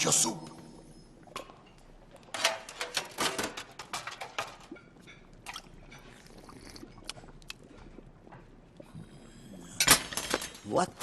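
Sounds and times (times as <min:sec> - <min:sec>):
utensils and dishes clattering: 0:02.4 - 0:05.3.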